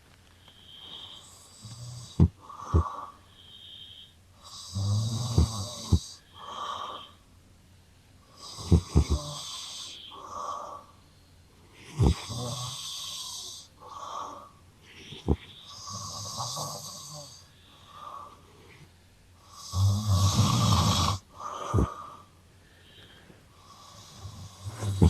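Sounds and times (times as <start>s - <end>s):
man snoring: 0.7s - 7.1s, 8.3s - 10.8s, 11.8s - 14.4s, 15.0s - 18.1s, 19.4s - 22.2s, 23.6s - 25.0s
cat wheezy snores: 0.7s - 7.2s, 8.3s - 10.9s, 11.8s - 18.8s, 19.4s - 22.2s, 23.6s - 25.0s.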